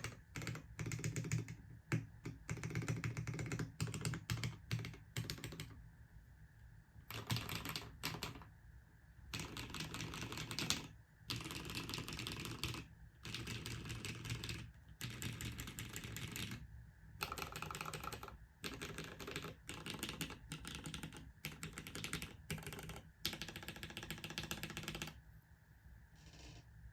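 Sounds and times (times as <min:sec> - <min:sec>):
mechanical keyboard typing clacks: 0:00.0 - 0:05.8, 0:07.1 - 0:08.5, 0:09.3 - 0:16.6, 0:17.2 - 0:25.2.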